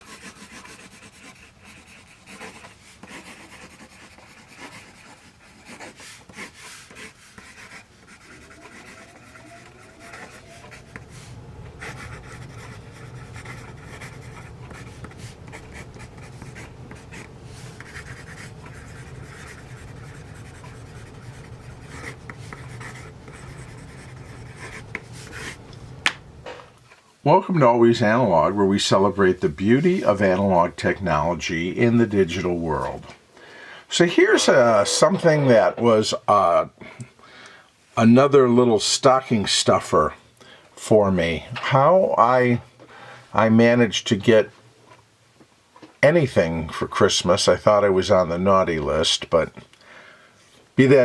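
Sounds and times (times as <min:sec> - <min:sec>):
pencil scratching on paper: 0:00.0 - 0:26.4
low steady hum: 0:07.3 - 0:37.1.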